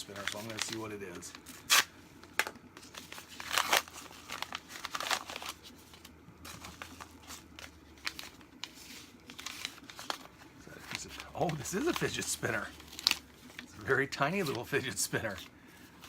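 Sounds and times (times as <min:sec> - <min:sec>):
envelope tearing: 0:00.0 - 0:00.9, 0:03.0 - 0:05.7, 0:06.4 - 0:13.7
paper packaging crinkling: 0:00.0 - 0:16.0.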